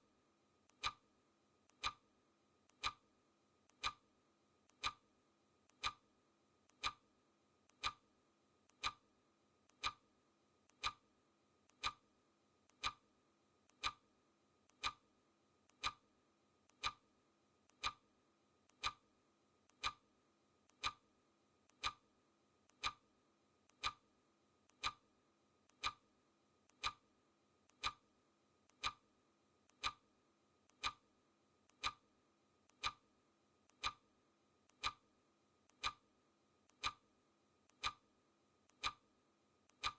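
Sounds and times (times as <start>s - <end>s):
clock ticking: 0.7s - 1.0s, 1.7s - 2.0s, 2.7s - 3.0s, 3.7s - 4.0s, 4.7s - 5.0s, 5.7s - 6.0s, 6.7s - 7.0s, 7.7s - 8.0s, 8.7s - 9.0s, 9.7s - 10.0s, 10.7s - 11.0s, 11.7s - 12.0s, 12.7s - 13.0s, 13.7s - 14.0s, 14.7s - 15.0s, 15.7s - 16.0s, 16.7s - 17.0s, 17.7s - 18.0s, 18.7s - 19.0s, 19.7s - 20.0s, 20.7s - 21.0s, 21.7s - 22.0s, 22.7s - 23.0s, 23.7s - 24.0s, 24.7s - 25.0s, 25.7s - 26.0s, 26.7s - 27.0s, 27.7s - 28.0s, 28.7s - 29.0s, 29.7s - 30.0s, 30.7s - 31.0s, 31.7s - 32.0s, 32.7s - 33.0s, 33.7s - 34.0s, 34.7s - 35.0s, 35.7s - 36.0s, 36.7s - 37.0s, 37.7s - 38.0s, 38.7s - 39.0s.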